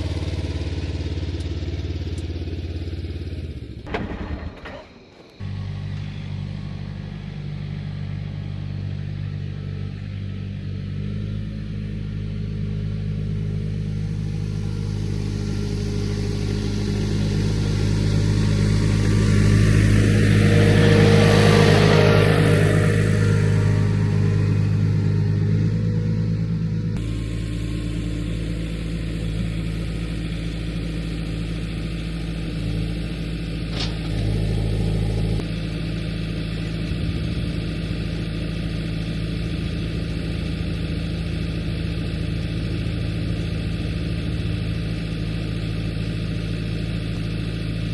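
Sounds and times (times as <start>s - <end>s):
diesel tractor engine running: 0.0s - 47.9s.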